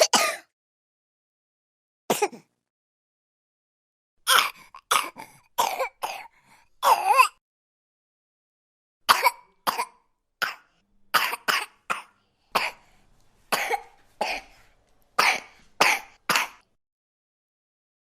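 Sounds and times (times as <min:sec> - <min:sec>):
baby coughing: 0:00.0 - 0:00.6, 0:02.1 - 0:02.5, 0:04.2 - 0:07.4, 0:09.1 - 0:12.9, 0:13.5 - 0:14.6, 0:15.2 - 0:16.7.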